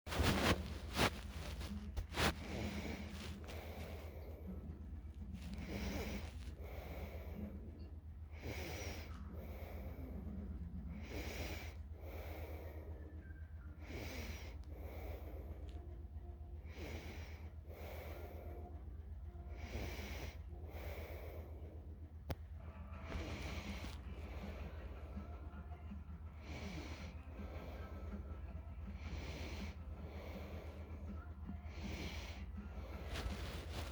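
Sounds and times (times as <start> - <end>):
quiet snoring: 1.1 - 13.2.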